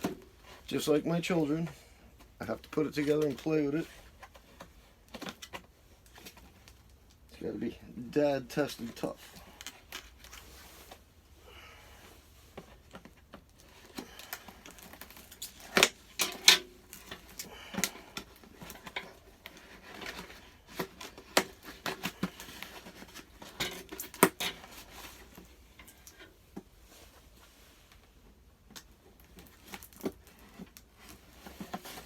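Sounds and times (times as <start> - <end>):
hands handling toy packaging: 8.5 - 11.2, 12.4 - 32.0.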